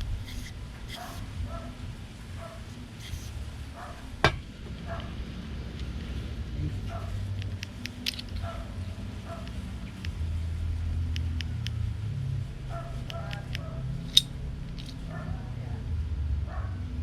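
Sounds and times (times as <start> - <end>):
low steady rumble: 0.0 - 17.0
pistol parts clicking: 7.4 - 8.5, 13.0 - 15.0.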